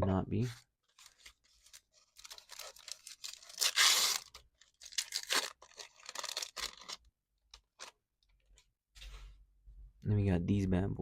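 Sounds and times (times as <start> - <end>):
card packaging crinkling and tearing: 0.8 - 8.0.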